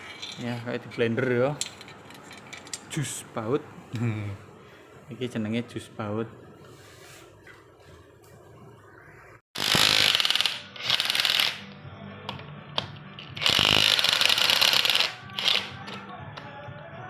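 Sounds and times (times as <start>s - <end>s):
hammering power tool: 9.6s - 11.6s.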